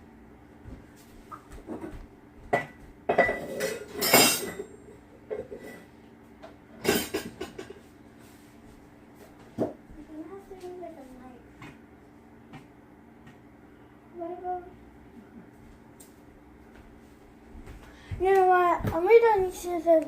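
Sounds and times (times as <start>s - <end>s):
metal utensils clinking: 3.3s - 4.7s.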